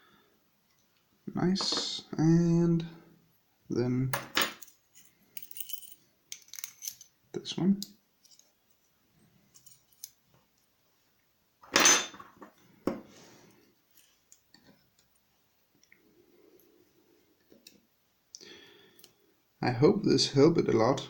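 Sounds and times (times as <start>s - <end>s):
small metal clicks and clinks: 4.4s - 7.1s.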